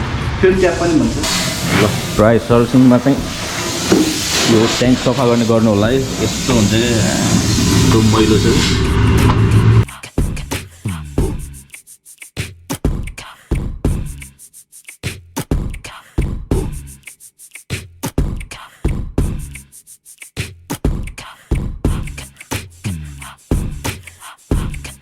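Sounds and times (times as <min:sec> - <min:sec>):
beatboxing hip-hop beat: 0:09.8 - 0:25.0.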